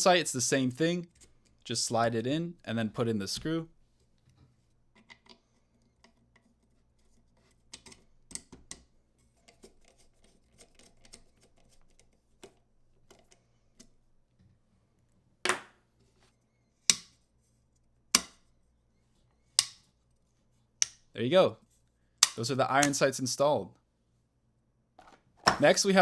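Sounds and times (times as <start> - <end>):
loud sharp clicks: 22.2 - 23.0
metal sight clicks and scrapes: 22.2 - 23.0.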